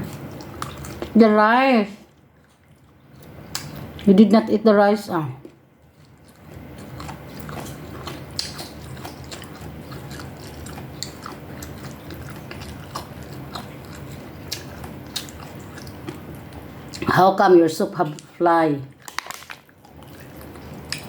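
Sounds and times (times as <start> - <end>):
chewing and biting: 0.0 - 1.2, 2.1 - 4.1, 5.4 - 17.1, 18.2 - 21.0
mouth clicks and smacks: 3.2 - 4.0, 5.4 - 17.1.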